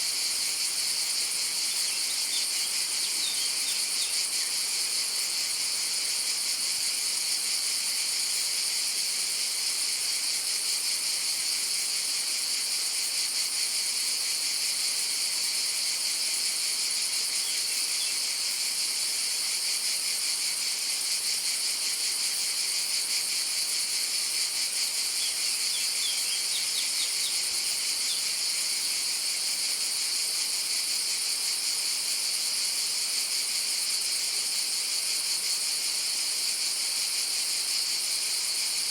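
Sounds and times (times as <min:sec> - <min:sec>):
cicadas buzzing: 0:00.0 - 0:38.9
faint bird chirps: 0:01.7 - 0:04.2, 0:25.2 - 0:27.4.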